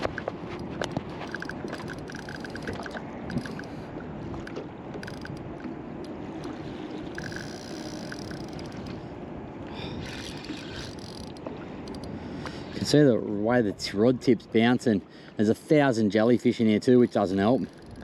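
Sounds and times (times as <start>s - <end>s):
water noise: 0.0s - 18.0s
wind: 0.0s - 18.0s
fishing reel clicking: 1.2s - 3.8s, 5.0s - 5.5s, 7.1s - 8.9s, 10.0s - 12.2s, 17.0s - 18.0s.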